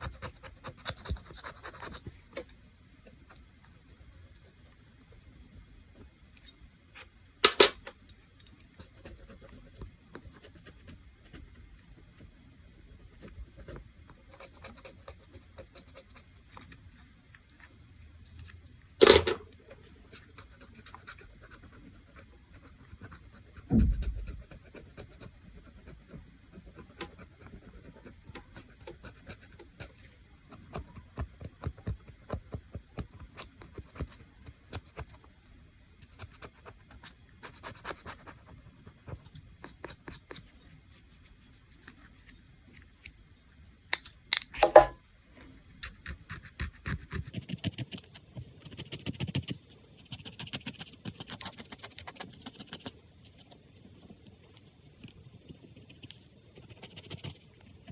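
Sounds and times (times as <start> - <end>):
manicure tools scratching nails: 45.8 - 54.2.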